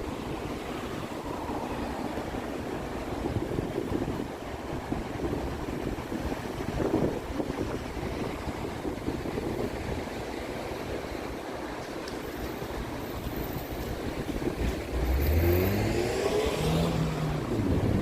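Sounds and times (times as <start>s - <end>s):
wind rumble on microphone: 0.0s - 11.8s, 12.6s - 18.0s
vehicle engine accelerating: 14.6s - 18.0s.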